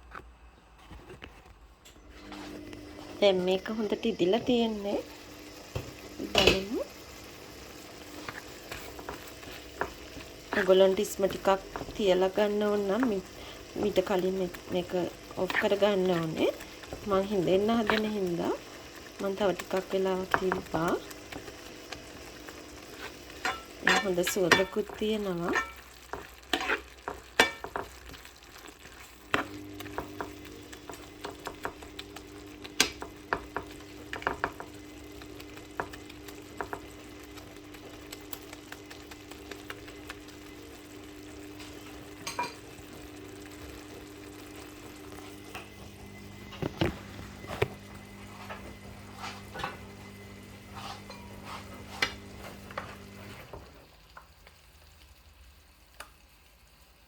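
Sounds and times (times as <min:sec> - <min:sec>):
faint sizzle: 0:01.9 - 0:57.0
spoon scraping a pan: 0:22.5 - 0:31.5, 0:50.6 - 0:53.0.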